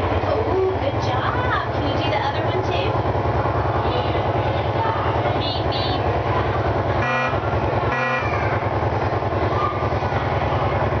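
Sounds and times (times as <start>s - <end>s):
pulsing boat engine rumble: 0.0s - 11.0s
short horn toots: 7.0s - 8.3s.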